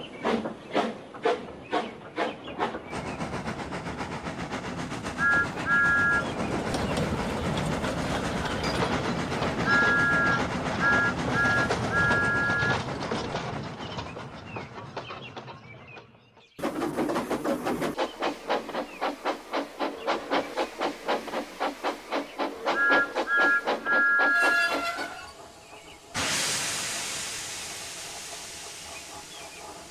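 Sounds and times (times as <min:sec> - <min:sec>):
steam engine chuffing: 0:02.9 - 0:13.9, 0:16.6 - 0:29.9.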